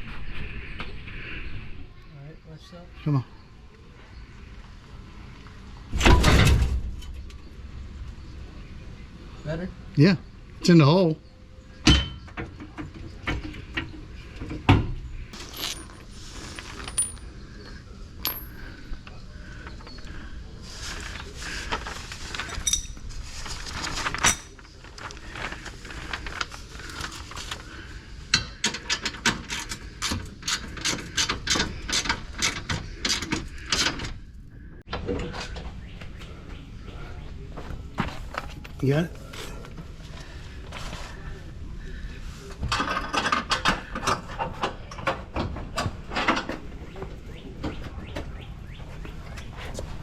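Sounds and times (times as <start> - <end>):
metal tools clinking on steel: 15.4 - 19.0, 22.4 - 23.0.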